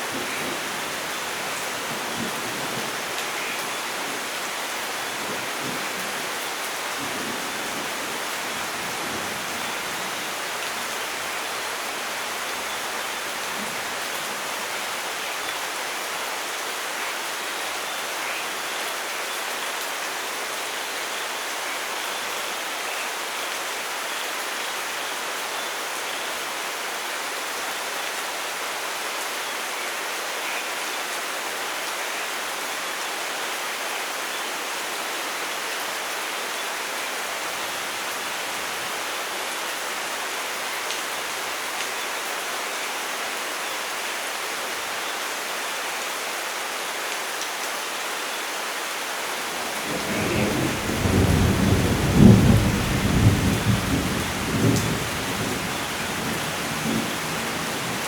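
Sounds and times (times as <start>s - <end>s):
steady rain hiss: 0.0s - 58.0s
thunder rumbling: 49.6s - 58.0s.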